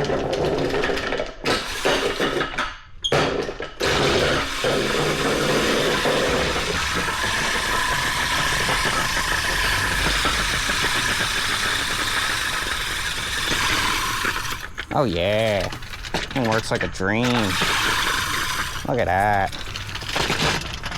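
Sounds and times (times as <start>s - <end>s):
reel lawnmower whirring and clattering: 0.0s - 20.9s.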